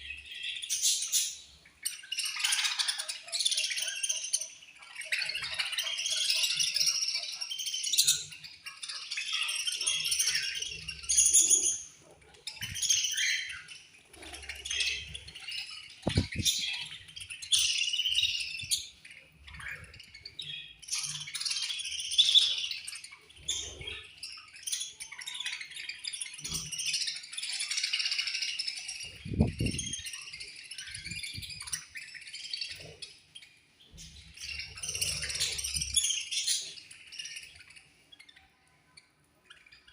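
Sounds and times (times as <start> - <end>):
budgerigars chirping and chattering: 0.0 - 39.9
low thumps: 16.1 - 16.4.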